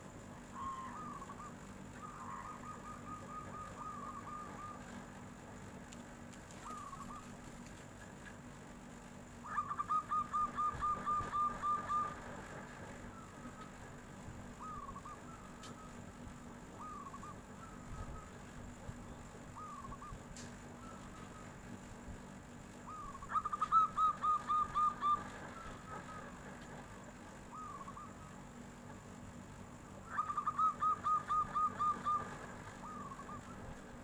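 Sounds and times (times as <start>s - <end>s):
dove cooing: 0.4s - 5.0s, 6.5s - 7.4s, 9.4s - 13.8s, 14.5s - 18.5s, 19.1s - 21.6s, 22.8s - 28.4s, 30.0s - 34.0s.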